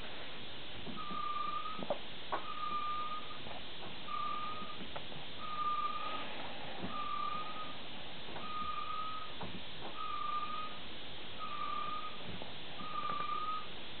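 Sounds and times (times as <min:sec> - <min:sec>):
high-pitched wheel squeal: 0:01.0 - 0:01.8, 0:02.4 - 0:03.4, 0:04.1 - 0:04.8, 0:05.4 - 0:07.8, 0:08.4 - 0:09.3, 0:10.0 - 0:10.8, 0:11.4 - 0:12.2, 0:12.8 - 0:13.7.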